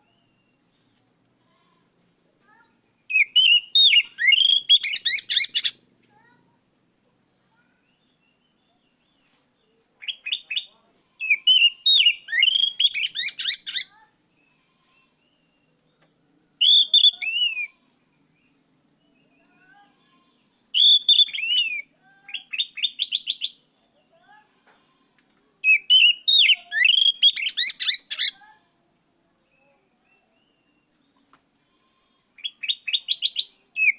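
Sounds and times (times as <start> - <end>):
songbird singing: 2.5 - 6.4, 7.8 - 19.8, 20.4 - 24.2, 25.6 - 28.5, 29.3 - 31.4, 32.4 - 33.9.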